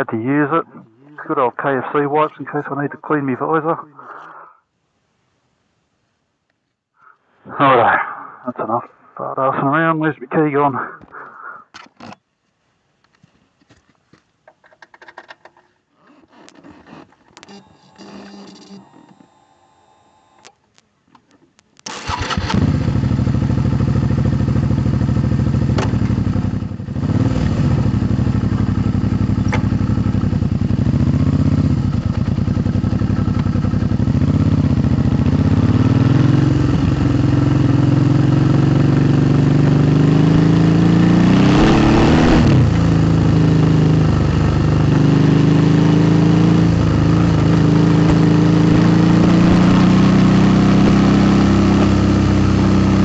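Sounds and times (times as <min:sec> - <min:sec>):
motorcycle engine revving: 0:21.9 - 0:53.0
rush of noise: 0:40.2 - 0:44.9.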